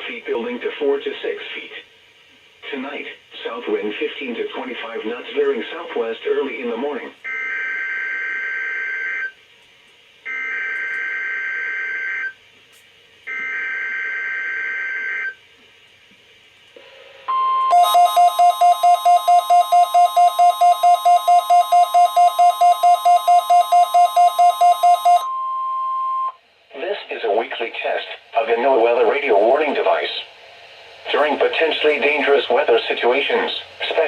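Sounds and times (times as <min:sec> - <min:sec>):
steady warning alarm tone: 0:17.3 - 0:26.3
weather radio rapid beeping: 0:17.7 - 0:25.2.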